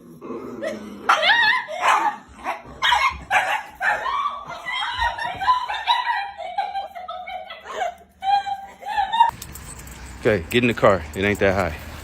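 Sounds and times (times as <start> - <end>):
dog barking and yipping: 1.1 - 6.6.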